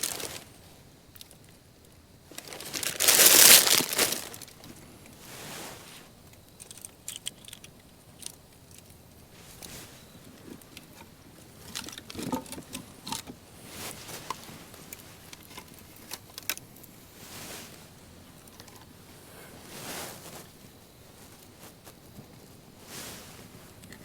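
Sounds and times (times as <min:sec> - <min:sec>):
sticks snapping and rustling: 0:00.0 - 0:00.4, 0:02.3 - 0:04.7.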